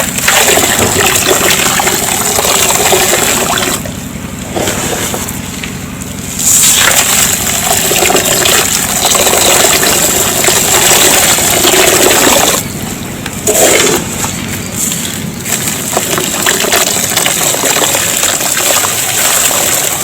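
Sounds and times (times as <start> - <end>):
sand pouring into a tub: 6.3 - 8.2.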